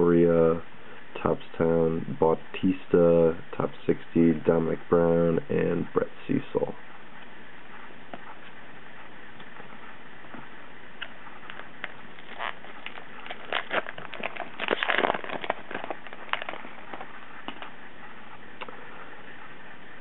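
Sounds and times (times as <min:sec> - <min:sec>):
cards rustling: 0:11.5 - 0:17.7
foil wrapper crinkling: 0:11.5 - 0:17.7.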